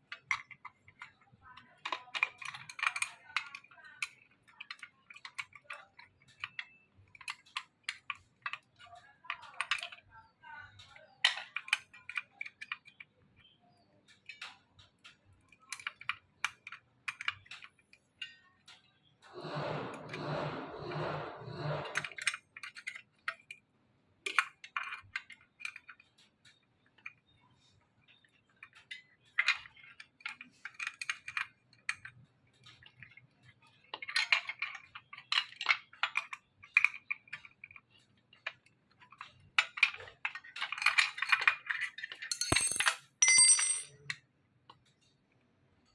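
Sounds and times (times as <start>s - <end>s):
small metal clicks and clinks: 0.0s - 10.1s, 10.7s - 18.9s, 42.3s - 43.9s.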